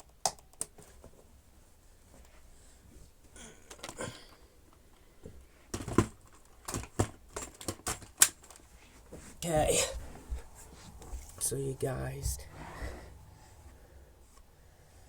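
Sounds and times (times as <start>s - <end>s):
irregular clicks and knocks: 5.3s - 8.6s
faint rustling: 8.4s - 14.5s.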